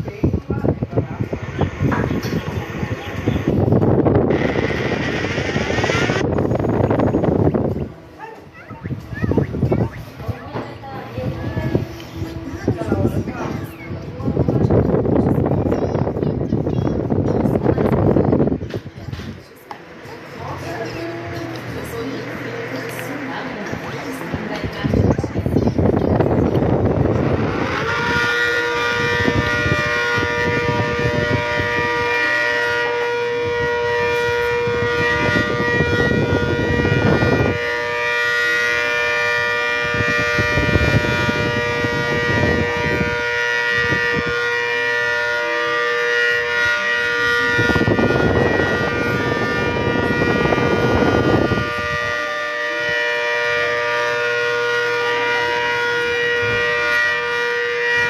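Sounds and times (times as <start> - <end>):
low rushing noise: 0.0 - 8.2
tornado warning siren wailing: 1.0 - 7.7, 26.6 - 58.0.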